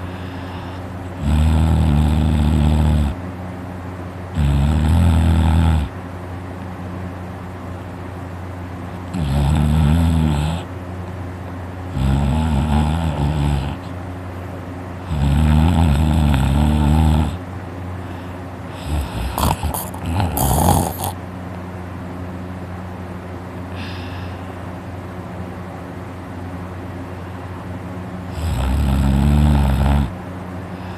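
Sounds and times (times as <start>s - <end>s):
person snoring loudly: 0.0s - 3.2s, 4.4s - 5.9s, 9.1s - 10.7s, 11.9s - 13.9s, 15.0s - 17.4s, 18.7s - 21.2s, 23.8s - 24.4s, 28.3s - 30.2s
snorts: 0.0s - 3.2s, 4.4s - 6.0s, 9.1s - 10.7s, 11.9s - 14.0s, 15.0s - 17.4s, 18.1s - 21.2s, 23.8s - 24.4s, 28.3s - 30.9s.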